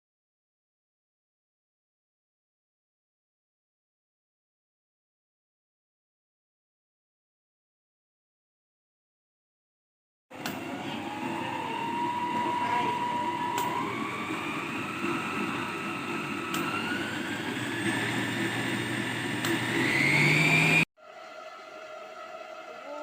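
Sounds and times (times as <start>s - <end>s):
stand mixer motor whining: 10.3s - 20.9s
mixer speed switch click: 10.4s - 10.6s, 13.5s - 13.8s, 16.5s - 16.8s, 19.4s - 19.8s.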